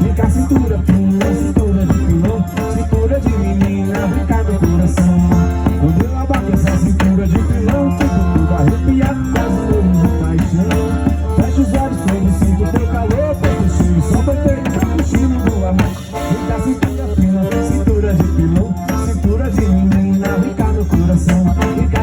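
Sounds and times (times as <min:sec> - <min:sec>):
live instrumental folk music: 0:00.0 - 0:22.0.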